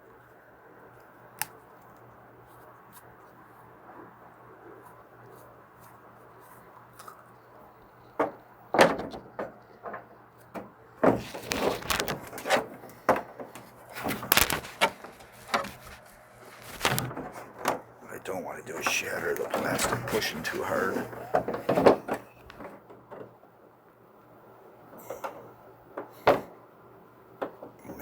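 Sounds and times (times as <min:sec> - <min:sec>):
hard plastic knocking and creaking: 0:08.2 - 0:17.9, 0:18.8 - 0:23.3.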